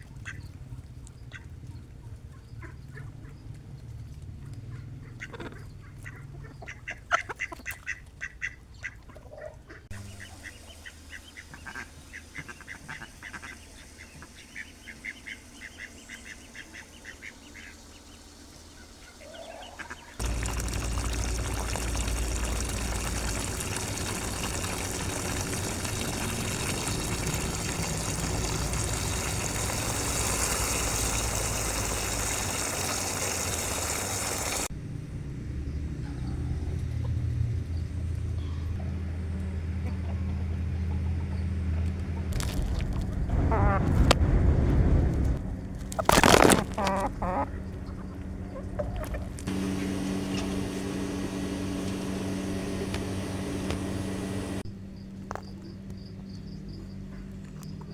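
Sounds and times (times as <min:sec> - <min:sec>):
ducks quacking: 0:04.7 - 0:17.9, 0:18.8 - 0:34.7, 0:43.3 - 0:44.2, 0:46.2 - 0:52.4.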